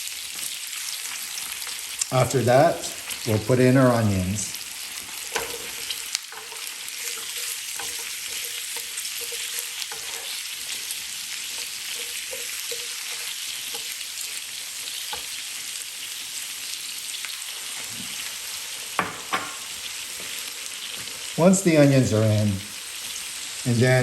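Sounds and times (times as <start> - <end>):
food sizzling in a pan: 0.0 - 24.0
utensil knocking in pan: 19.0 - 19.7.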